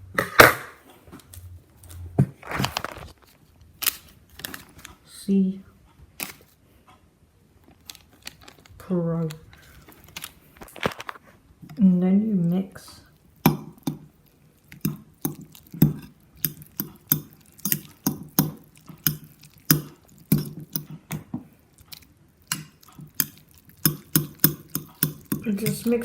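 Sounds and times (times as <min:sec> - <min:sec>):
utensil clinking against a bowl: 0:13.4 - 0:26.0.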